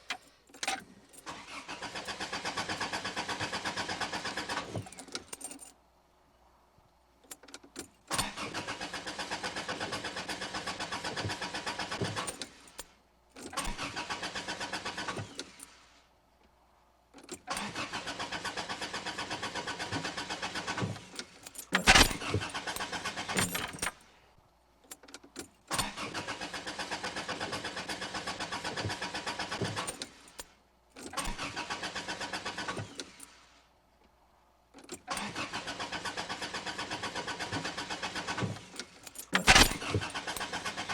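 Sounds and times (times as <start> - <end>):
car starter cranking engine: 0.7 - 5.3, 8.0 - 12.7, 13.4 - 15.8, 17.4 - 24.0, 25.6 - 30.3, 31.0 - 33.4, 34.8 - 40.9.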